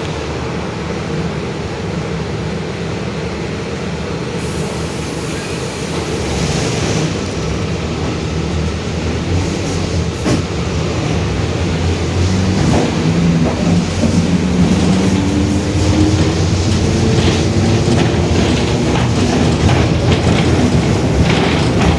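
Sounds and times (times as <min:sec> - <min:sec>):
engine and road noise: 0:00.0 - 0:21.9
bus differential growling: 0:04.2 - 0:21.9.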